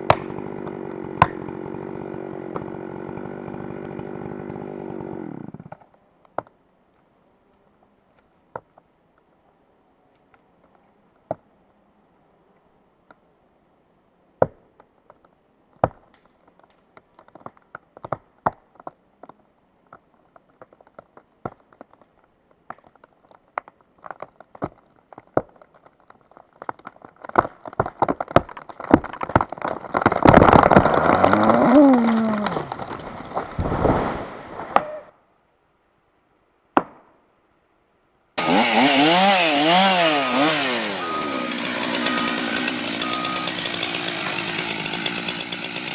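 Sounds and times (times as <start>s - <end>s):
chainsaw running: 0.0s - 5.7s, 30.3s - 33.3s, 38.4s - 45.9s
tree trunk cracking: 20.4s - 34.8s, 38.4s - 45.9s
tree crashing down: 28.3s - 34.8s, 38.4s - 45.9s.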